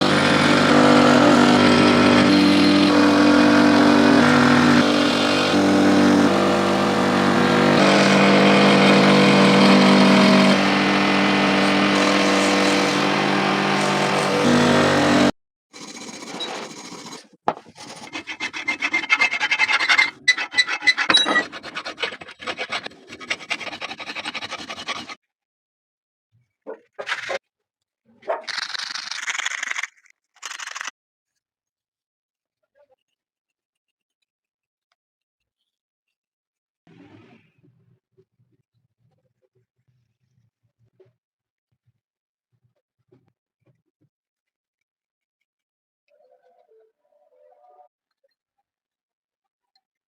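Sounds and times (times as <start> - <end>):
power tool running: 0.0 - 17.2
scraping on metal: 17.7 - 25.2.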